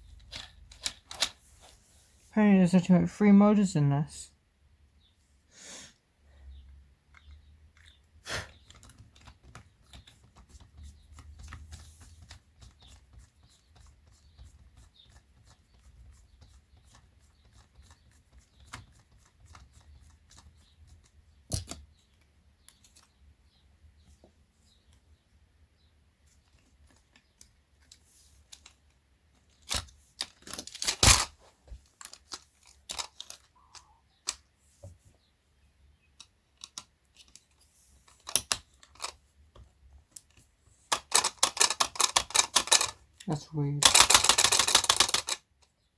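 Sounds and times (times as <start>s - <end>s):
plastic and metal parts clicking: 0.1s - 1.4s, 7.1s - 13.6s, 16.4s - 23.1s, 26.4s - 34.5s, 36.1s - 45.8s.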